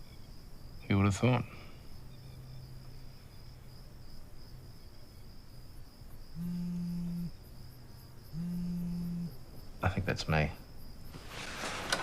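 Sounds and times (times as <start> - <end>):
crickets chirping: 0.0 - 12.0
phone vibrating buzz: 6.4 - 7.4, 8.3 - 9.4.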